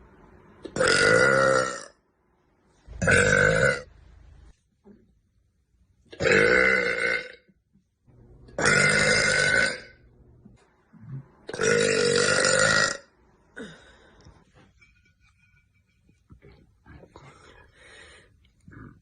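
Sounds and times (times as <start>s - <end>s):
woman burping loudly: 0.6s - 2.0s, 3.0s - 3.9s, 6.1s - 7.5s, 8.6s - 10.0s, 11.5s - 13.7s.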